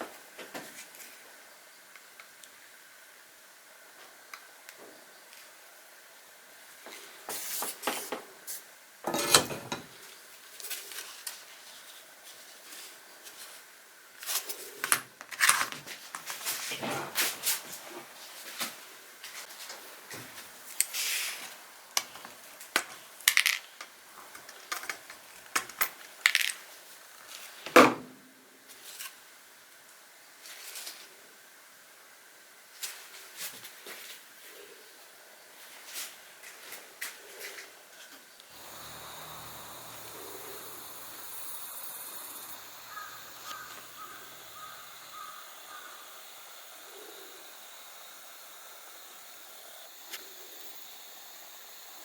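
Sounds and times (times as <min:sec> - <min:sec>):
metal parts and tools clinking: 0:09.1 - 0:09.9, 0:22.8 - 0:26.6.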